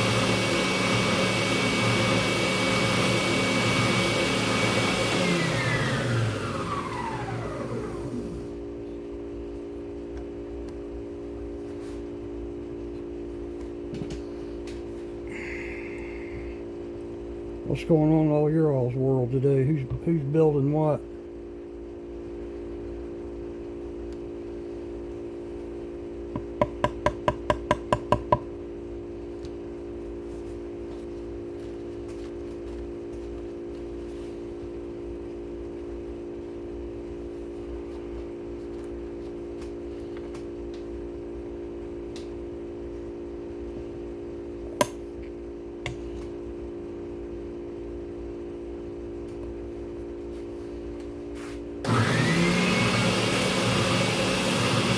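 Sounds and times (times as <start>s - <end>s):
steady electrical hum: 8.1s - 51.9s.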